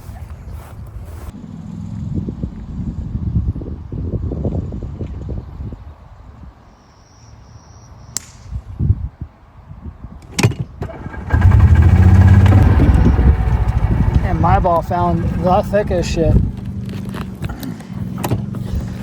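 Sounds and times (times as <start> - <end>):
sharp crack: 8.2 - 8.6
golf cart engine running: 10.8 - 19.0
low rumble: 11.0 - 17.4.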